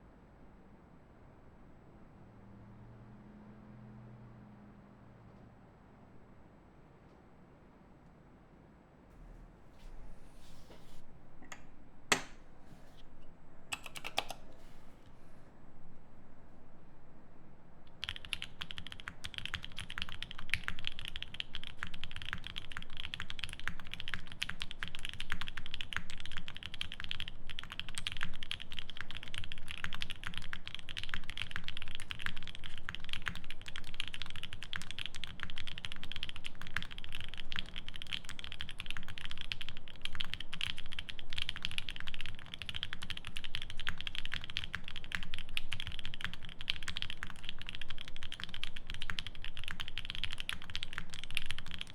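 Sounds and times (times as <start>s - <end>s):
mechanical keyboard typing: 13.7s - 14.9s, 17.9s - 51.9s.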